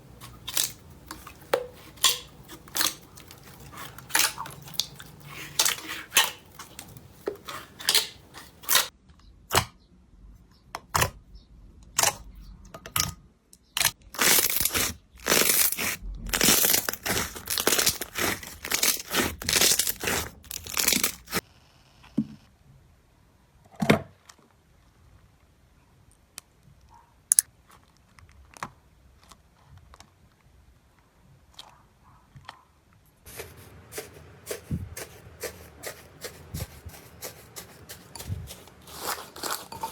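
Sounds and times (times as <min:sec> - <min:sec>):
slime crackling and popping: 0:13.8 - 0:21.4.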